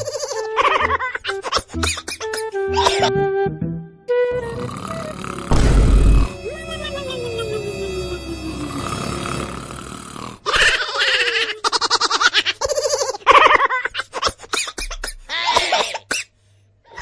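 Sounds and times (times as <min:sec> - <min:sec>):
slow falling tone: 0:05.1 - 0:10.1
person laughing: 0:06.4 - 0:08.5.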